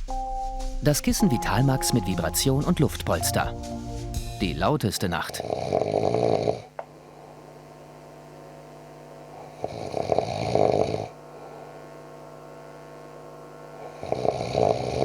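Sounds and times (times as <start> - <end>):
man snoring loudly: 5.3 - 7.6, 9.3 - 11.8, 13.8 - 15.0
quiet breathing: 5.3 - 8.2, 9.2 - 12.5, 13.6 - 15.0.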